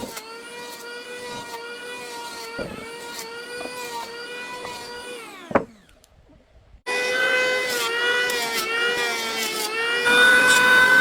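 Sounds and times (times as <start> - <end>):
power tool motor running: 0.0 - 6.0, 6.9 - 11.0
knocks: 2.6 - 2.9, 5.4 - 5.8.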